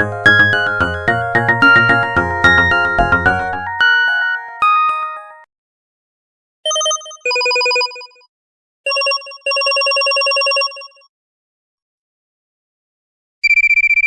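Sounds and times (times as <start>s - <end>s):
telephone-style ringtone: 1.7s - 5.5s, 6.7s - 8.3s, 8.9s - 11.1s, 13.4s - 14.0s.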